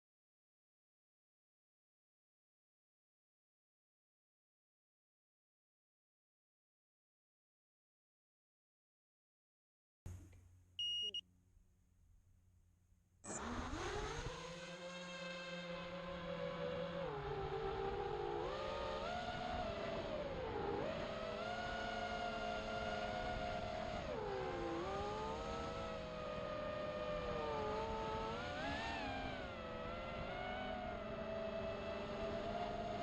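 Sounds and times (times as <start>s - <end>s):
quadcopter motors whining: 13.3s - 15.5s.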